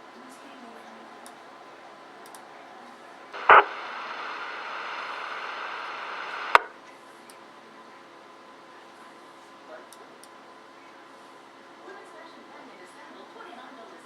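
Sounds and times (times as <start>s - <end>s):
radio hiss: 0.0s - 6.8s
radio static burst: 2.0s - 6.7s
squelch click: 2.2s - 6.7s.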